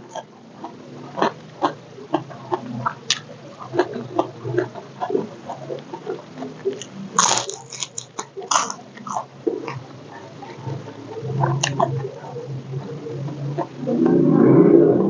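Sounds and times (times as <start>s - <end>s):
crunchy bites: 0.0s - 9.9s.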